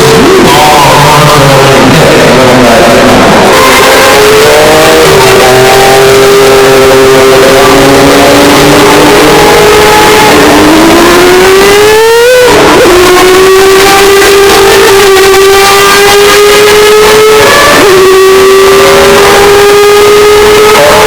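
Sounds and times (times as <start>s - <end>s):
rotary engine revving high: 0.0s - 21.0s.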